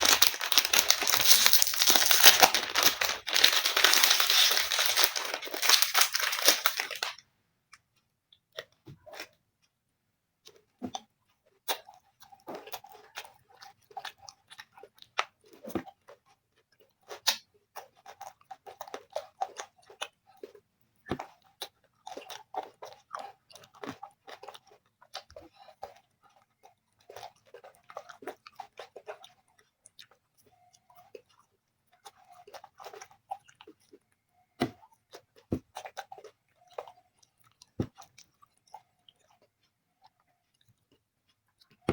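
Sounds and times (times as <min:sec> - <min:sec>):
dense crackling: 0:00.0 - 0:07.1
crunching ice cream bites: 0:00.0 - 0:07.2, 0:11.7 - 0:41.9
chewing and mouth clicks: 0:10.4 - 0:41.9.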